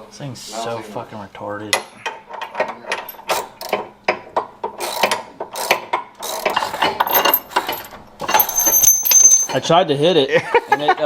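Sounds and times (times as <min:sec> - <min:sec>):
metal tools clinking and knocking: 0:06.8 - 0:09.7.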